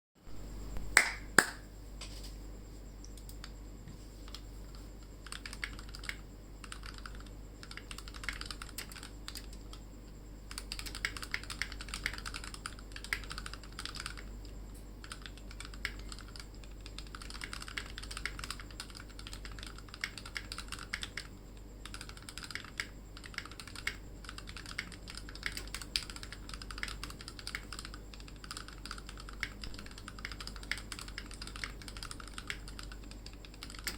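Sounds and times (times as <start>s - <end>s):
mechanical keyboard typing: 5.2s - 9.8s, 10.5s - 14.3s, 15.0s - 33.9s
sharp loud keyboard clacks: 15.0s - 33.9s.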